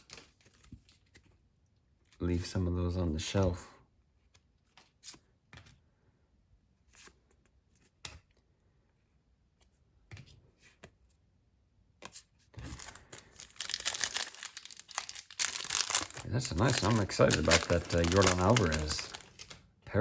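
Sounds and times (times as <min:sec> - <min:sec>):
foil wrapper tearing and crinkling: 0:12.6 - 0:19.6
trading cards clicking: 0:13.8 - 0:19.6.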